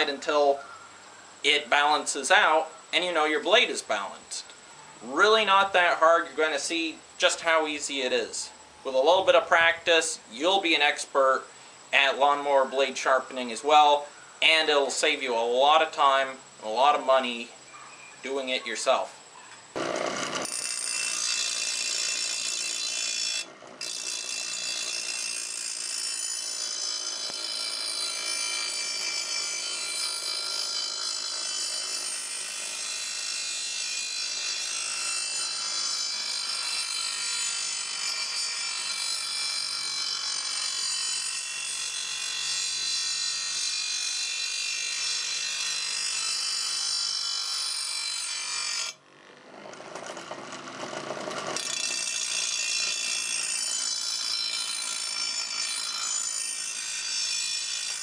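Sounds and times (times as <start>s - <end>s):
grinder grinding metal blade: 19.6s - 58.0s.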